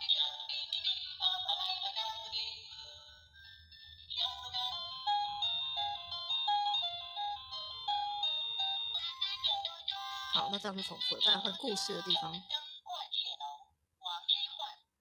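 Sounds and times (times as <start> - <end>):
toy electronic tune: 3.0 - 12.5.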